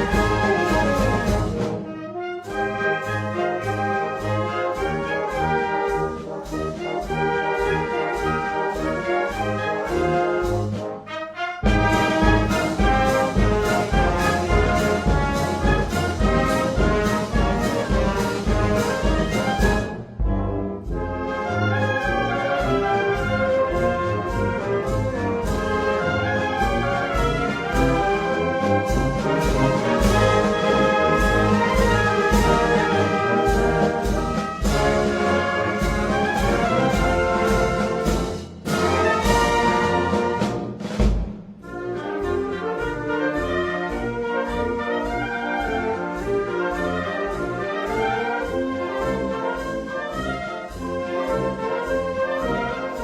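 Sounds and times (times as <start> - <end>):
bass drum beat: 0.0 - 1.6, 11.6 - 41.7
trumpets and trombones playing: 0.0 - 53.0.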